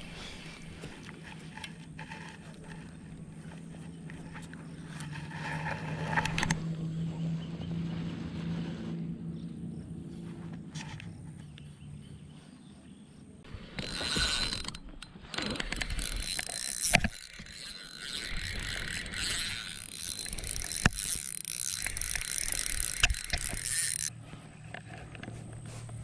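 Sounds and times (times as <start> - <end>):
fishing reel ratcheting whir: 0.0 - 6.7, 13.5 - 25.2
sharp clicks: 13.7 - 24.1.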